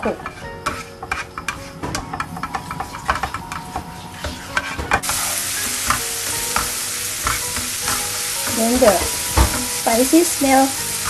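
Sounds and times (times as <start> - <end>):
spatula scraping pan: 0.0 - 11.0
paste sizzling in oil: 2.4 - 11.0.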